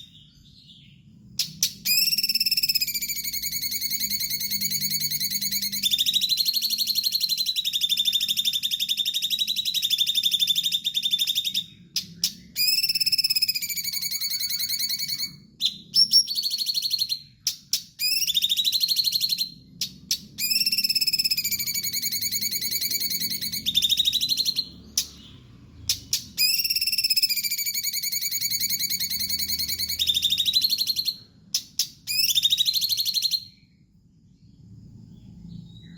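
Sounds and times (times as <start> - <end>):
songbird singing buzzy trills: 0.0 - 35.9.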